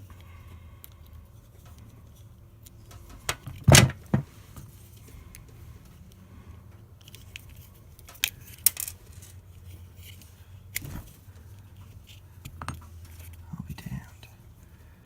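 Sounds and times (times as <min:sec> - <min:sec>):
low steady hum: 0:00.0 - 0:15.0
small plastic and metal parts clicking: 0:07.0 - 0:13.4.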